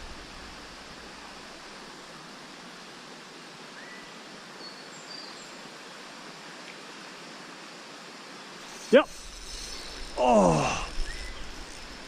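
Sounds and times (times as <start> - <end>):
bird calls: 10.8 - 11.9.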